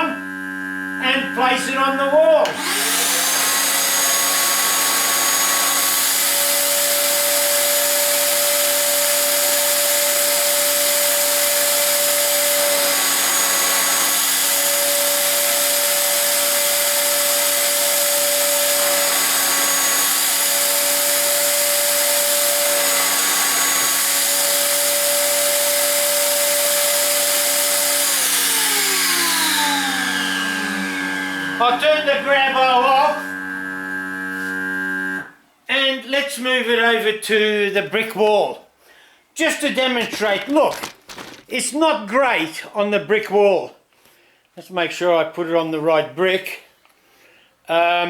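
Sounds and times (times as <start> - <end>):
shop vacuum running: 0.0 - 35.4.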